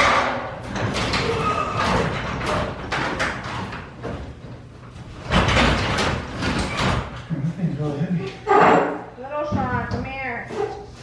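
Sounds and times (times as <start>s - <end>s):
metal knocks: 0.0s - 7.3s
garage door rattling and scraping: 0.0s - 7.4s, 8.3s - 11.0s.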